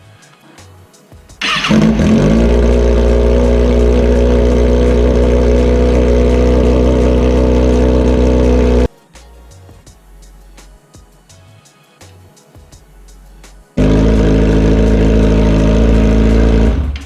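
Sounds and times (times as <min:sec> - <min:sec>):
motorcycle engine starting and idling: 0:01.4 - 0:08.9, 0:13.8 - 0:17.0.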